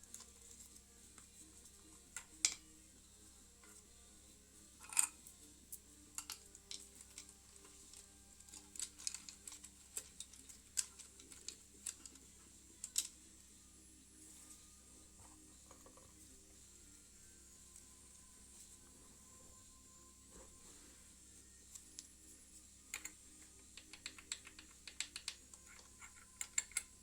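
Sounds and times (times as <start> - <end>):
faint background music: 0.0 - 27.0
metal tools clicking: 4.8 - 5.2, 6.2 - 12.2, 23.8 - 27.0.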